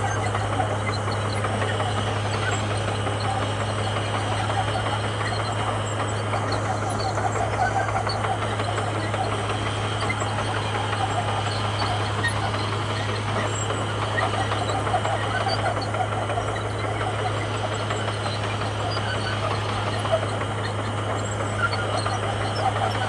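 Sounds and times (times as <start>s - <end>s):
diesel engine running: 0.0s - 23.0s.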